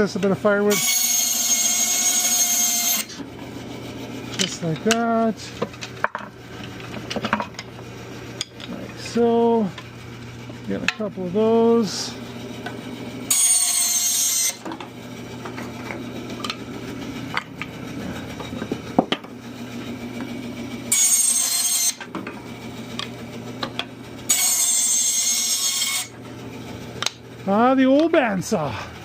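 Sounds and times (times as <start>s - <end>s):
bandsaw cutting wood with high whine: 0.0s - 5.5s, 10.6s - 27.2s
motor humming: 0.0s - 29.0s.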